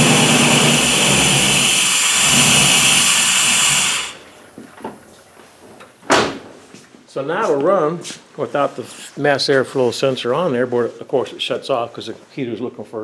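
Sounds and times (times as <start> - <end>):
pickup engine running and dying: 0.0 - 4.2.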